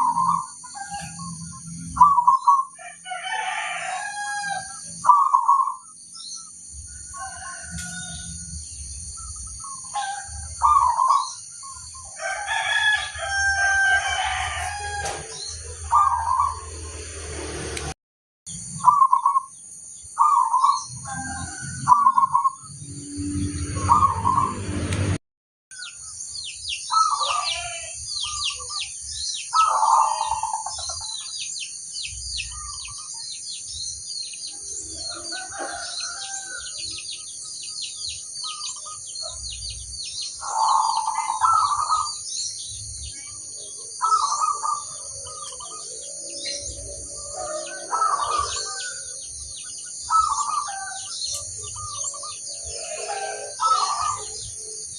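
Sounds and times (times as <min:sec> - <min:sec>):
small birds chirping: 0:00.0 - 0:16.8, 0:18.5 - 0:24.6, 0:25.7 - 0:54.9
doves cooing: 0:00.0 - 0:17.2, 0:18.8 - 0:19.5, 0:20.2 - 0:22.7, 0:23.7 - 0:24.5, 0:26.9 - 0:28.9, 0:29.5 - 0:31.2, 0:40.4 - 0:42.2, 0:43.2 - 0:54.8
steady high whine: 0:39.4 - 0:52.8.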